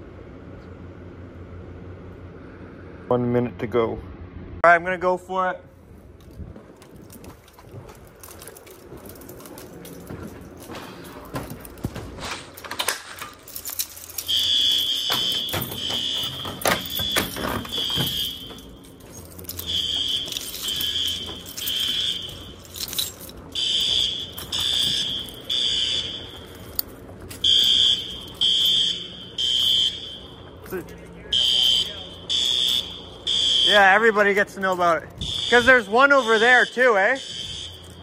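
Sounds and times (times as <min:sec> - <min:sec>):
fire alarm horns beeping: 0:13.5 - 0:38.0.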